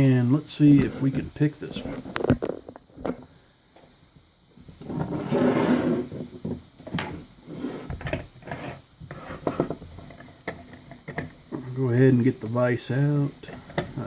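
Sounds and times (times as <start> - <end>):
sliding scrape on workbench: 0.8 - 2.0, 4.8 - 6.3, 6.9 - 9.8.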